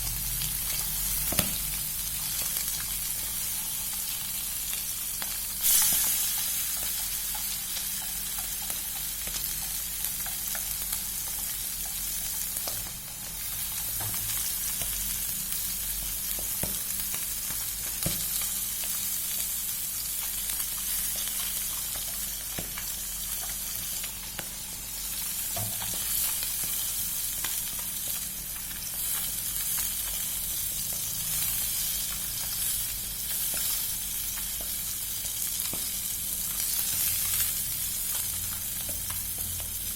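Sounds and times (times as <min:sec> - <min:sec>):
food sizzling in hot oil: 0:00.0 - 0:39.9.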